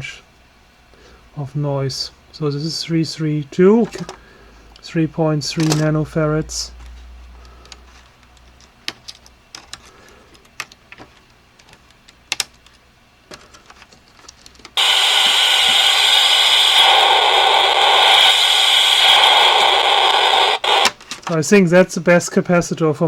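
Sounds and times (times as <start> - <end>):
loud steady white noise hiss: 0.0 - 7.5, 14.7 - 23.0.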